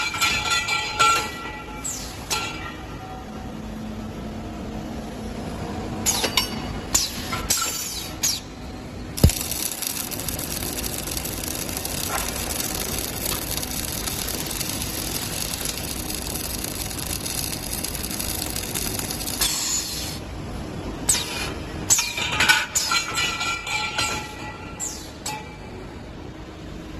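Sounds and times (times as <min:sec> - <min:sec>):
welding hiss: 0:09.2 - 0:20.2.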